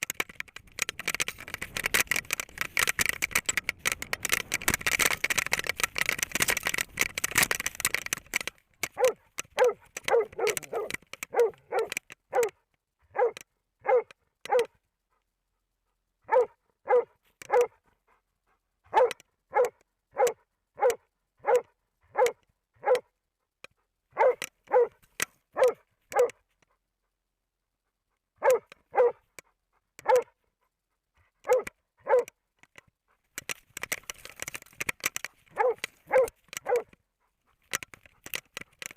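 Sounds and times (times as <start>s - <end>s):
rustling: 0.0s - 12.5s, 32.7s - 38.9s
dog barking: 8.9s - 14.8s, 16.2s - 17.8s, 18.9s - 23.1s, 24.1s - 26.4s, 28.4s - 29.3s, 30.0s - 30.4s, 31.4s - 32.4s, 35.5s - 37.0s.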